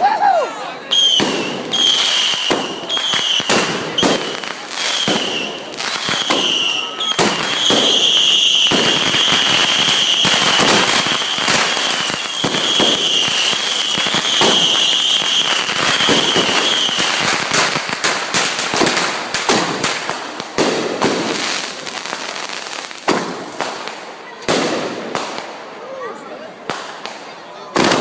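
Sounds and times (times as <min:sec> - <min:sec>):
fireworks crackling and banging: 0:00.0 - 0:28.0
high whistle: 0:00.9 - 0:04.1, 0:04.9 - 0:11.4.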